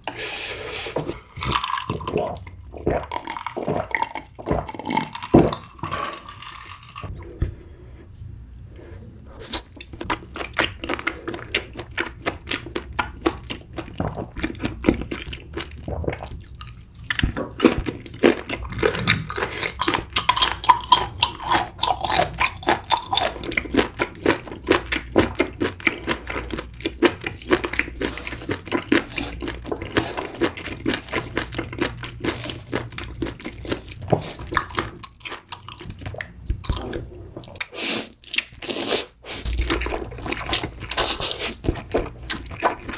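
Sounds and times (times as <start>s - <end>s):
wet chewing mouth sounds: 9.4s - 42.9s.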